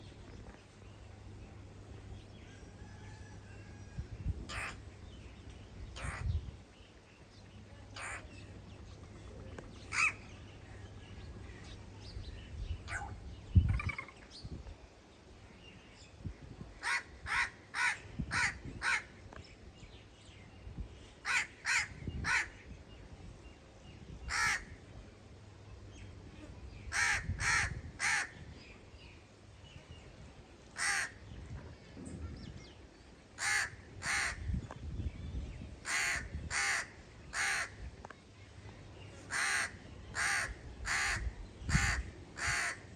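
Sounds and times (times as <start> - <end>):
crow cawing: 16.8 - 19.1, 24.3 - 24.7, 26.9 - 28.3, 30.8 - 31.2, 33.4 - 34.4, 35.8 - 37.8, 39.3 - 42.9.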